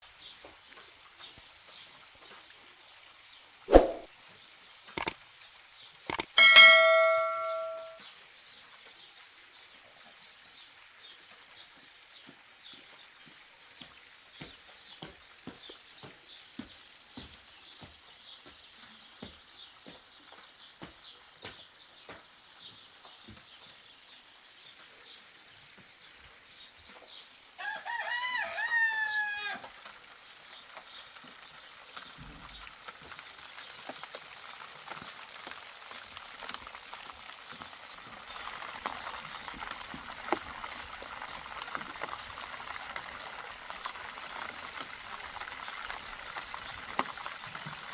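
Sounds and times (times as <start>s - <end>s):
rain pattering and dripping: 0.0s - 47.9s
rooster crowing: 27.6s - 29.7s.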